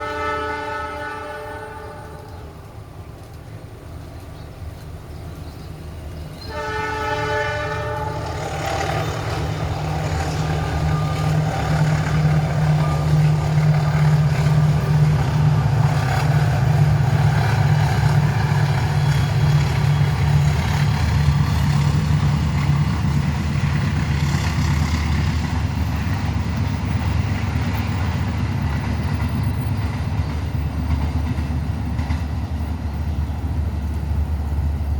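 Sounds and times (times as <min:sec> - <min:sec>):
train horn: 0:00.0 - 0:02.6, 0:06.4 - 0:22.0
diesel locomotive engine rumble: 0:00.0 - 0:34.9
train wheels on rails: 0:01.0 - 0:34.9.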